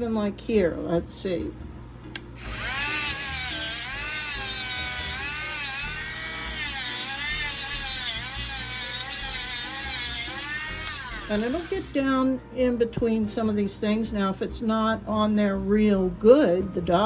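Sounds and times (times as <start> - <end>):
rotary tool high whine: 2.2 - 12.2.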